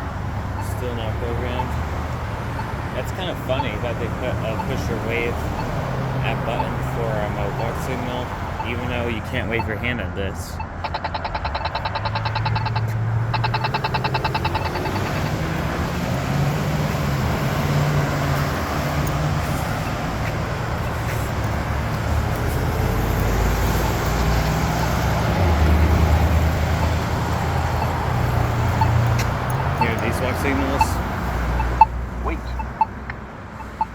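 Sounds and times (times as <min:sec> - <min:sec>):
car engines passing: 0:00.0 - 0:33.9
push button ticking walk tone: 0:00.6 - 0:09.8, 0:10.6 - 0:15.8, 0:25.9 - 0:33.9.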